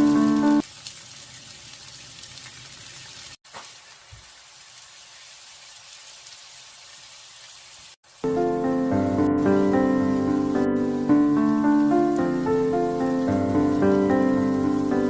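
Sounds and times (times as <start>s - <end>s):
pancake sizzling in oil: 0.0s - 14.9s.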